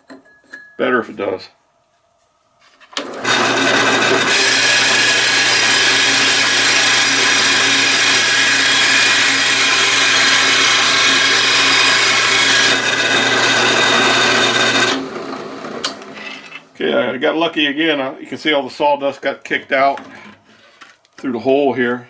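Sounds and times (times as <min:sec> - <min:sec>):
hole saw cutting wood: 0:03.0 - 0:16.7.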